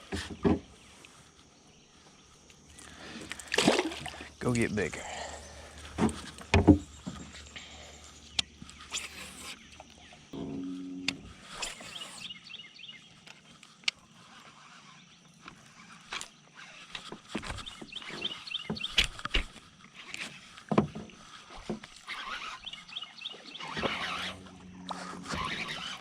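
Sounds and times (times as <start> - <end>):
water splashing: 2.8 - 7.4.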